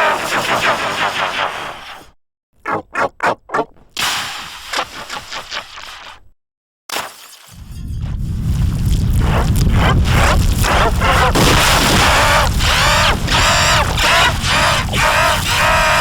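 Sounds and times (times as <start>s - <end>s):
low rumble: 7.6s - 14.8s.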